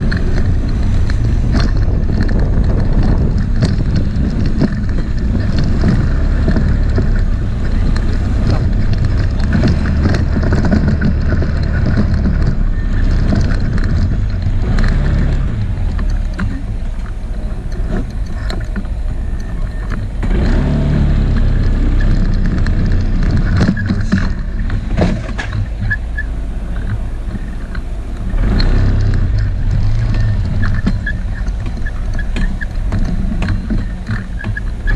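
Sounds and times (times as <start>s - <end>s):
knocks and rattles: 0.0s - 34.9s
vehicle low rumble: 0.0s - 34.9s.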